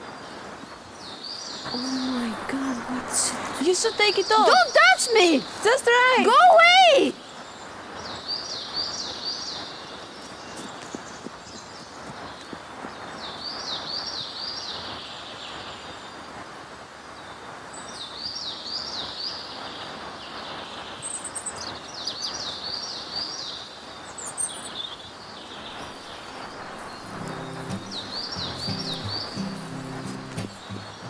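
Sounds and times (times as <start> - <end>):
birds chirping: 0.0 - 15.1, 21.1 - 31.0
outdoor noise haze: 0.0 - 31.0
low music notes: 27.0 - 31.0.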